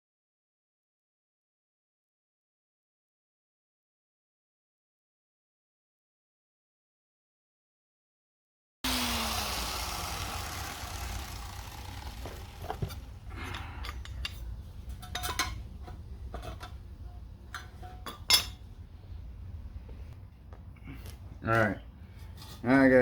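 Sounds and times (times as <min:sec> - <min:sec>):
angle grinder winding down: 0:08.9 - 0:13.2
metallic clinks and knocks: 0:12.6 - 0:16.8.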